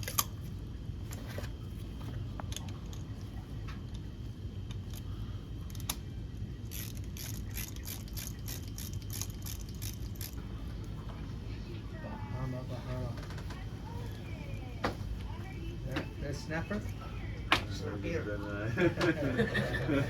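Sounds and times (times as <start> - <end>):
ratchet wrench clicking: 6.7 - 10.4.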